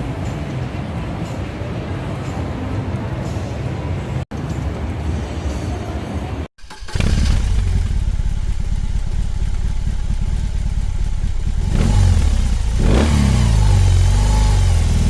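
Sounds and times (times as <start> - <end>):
motorcycle engine idling and revving: 6.6 - 15.0.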